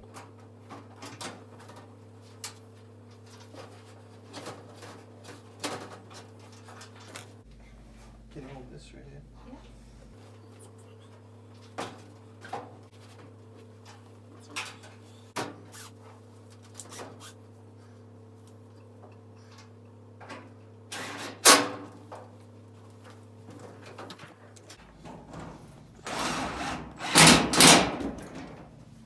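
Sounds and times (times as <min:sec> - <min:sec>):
steady low hum: 0:07.4 - 0:11.5, 0:24.8 - 0:29.0
sheet metal knocks and clicks: 0:24.9 - 0:28.8.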